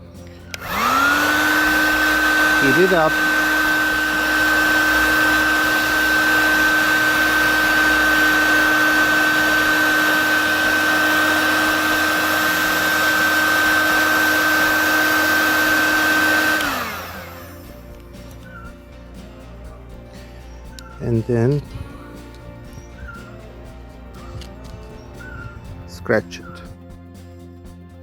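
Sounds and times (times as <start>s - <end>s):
fan winding down: 0.0s - 26.7s
heat gun blowing with fan whine: 0.5s - 18.6s.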